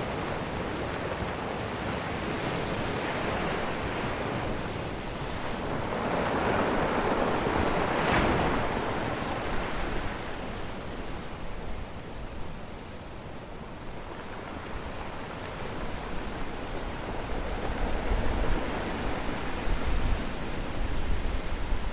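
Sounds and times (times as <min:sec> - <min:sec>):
ocean waves washing: 0:00.0 - 0:21.9.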